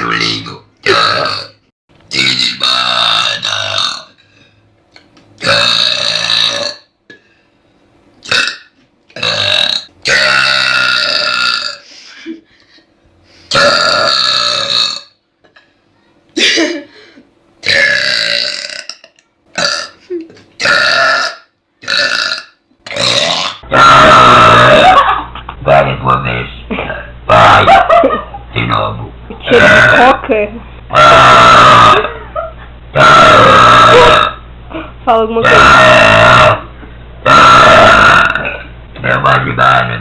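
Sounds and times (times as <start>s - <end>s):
person burping loudly: 0.0s - 1.6s, 2.6s - 4.3s, 5.4s - 7.2s, 8.2s - 11.8s, 13.5s - 15.6s, 17.6s - 26.2s, 26.8s - 27.8s, 28.5s - 30.2s, 30.9s - 32.2s, 32.9s - 34.4s, 35.4s - 40.0s.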